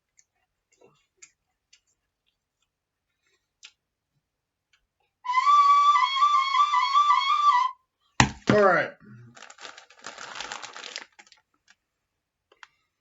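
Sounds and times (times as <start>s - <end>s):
high flute-like whistling tone: 5.2s - 7.8s
faint sharp clicks and taps: 12.5s - 12.8s.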